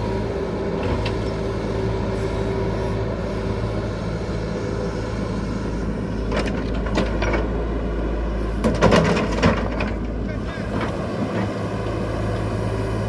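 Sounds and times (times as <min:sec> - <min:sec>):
diesel engine running: 0:00.0 - 0:13.0
excavator clanks and scrapes: 0:00.0 - 0:13.0.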